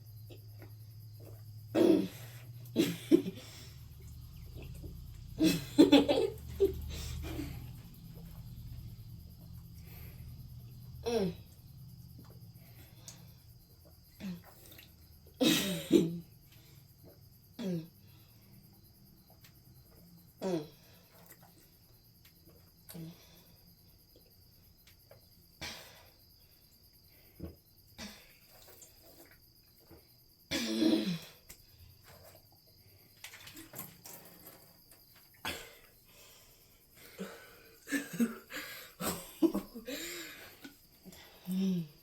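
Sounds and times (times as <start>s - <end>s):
crickets chirping: 0.0s - 42.0s
person coughing: 35.5s - 35.8s, 37.2s - 40.4s.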